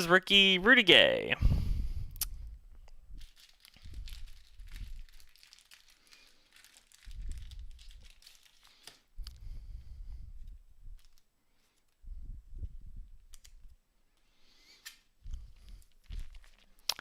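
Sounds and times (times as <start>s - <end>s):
plastic wrapper crinkling: 3.1s - 9.4s, 10.9s - 12.0s, 14.8s - 17.0s.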